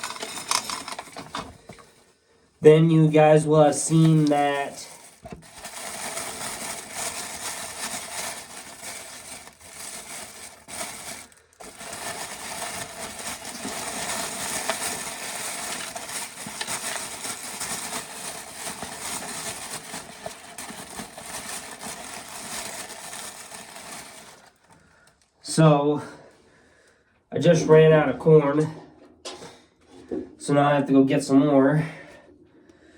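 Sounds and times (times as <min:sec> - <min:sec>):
corn kernels rattling in sheller: 0:00.0 - 0:01.5, 0:03.2 - 0:24.6.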